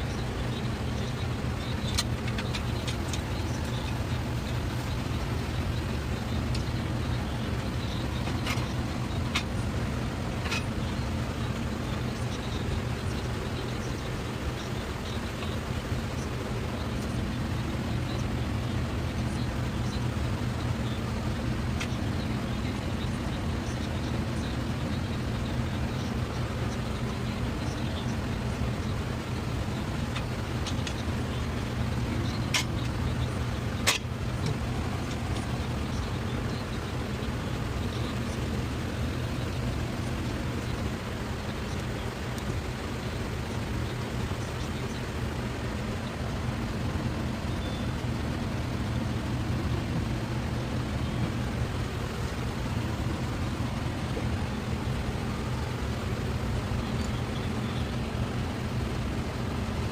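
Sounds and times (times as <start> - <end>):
low mechanical hum: 0.0 - 59.9
sharp click: 33.8 - 34.6.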